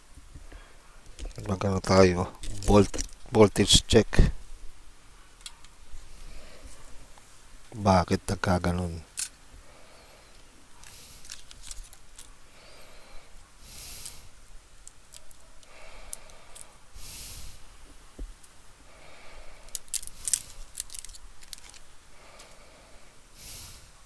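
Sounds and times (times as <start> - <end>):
small hand tools clicking: 14.9 - 16.8, 19.7 - 22.6.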